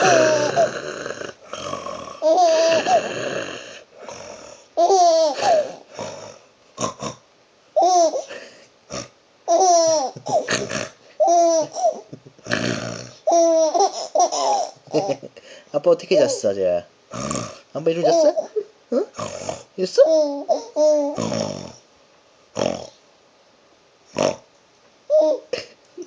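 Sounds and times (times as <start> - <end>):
breathy noisy breaths: 0.0 - 7.2, 8.2 - 9.1, 15.3 - 15.8.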